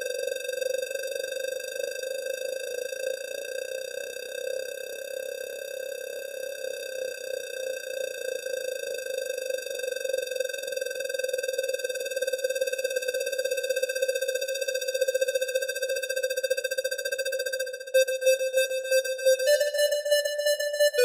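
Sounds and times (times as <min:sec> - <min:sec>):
synthesizer fluttering held note: 0:18.0 - 0:21.0
synthesizer rhythmic pulsing: 0:18.0 - 0:21.0.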